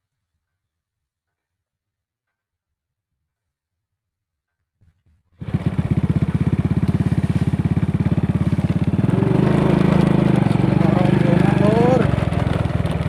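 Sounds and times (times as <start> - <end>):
small engine puttering: 5.4 - 13.0.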